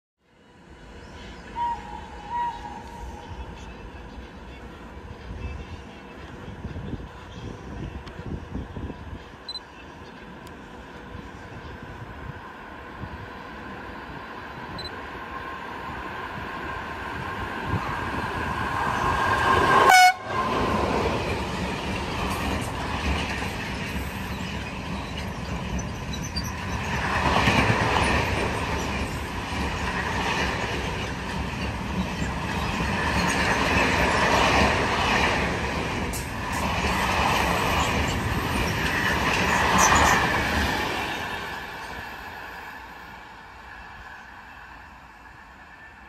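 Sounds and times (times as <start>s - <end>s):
train wheels rumbling on rails: 5.2s - 44.5s
two-note train horn: 19.8s - 20.4s.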